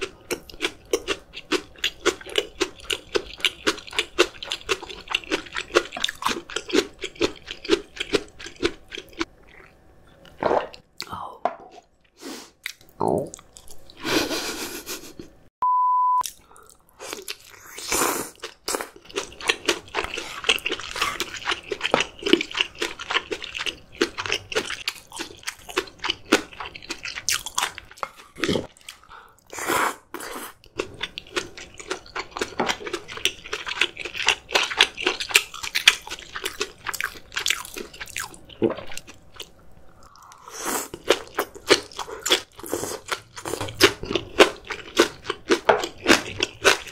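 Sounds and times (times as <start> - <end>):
crunching and chewing food: 0.0 - 11.1, 11.7 - 14.1, 16.2 - 46.9
loud steady beep: 15.6 - 16.2.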